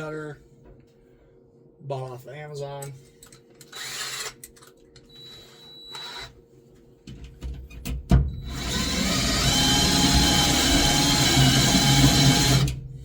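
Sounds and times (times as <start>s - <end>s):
power drill cutting metal: 3.7s - 4.4s, 5.2s - 6.3s, 8.5s - 12.8s.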